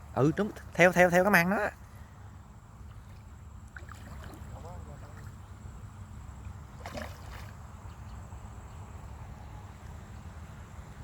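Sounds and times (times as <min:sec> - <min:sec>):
faint water sounds: 0:00.0 - 0:11.0
water splash: 0:03.0 - 0:05.4, 0:06.8 - 0:07.6.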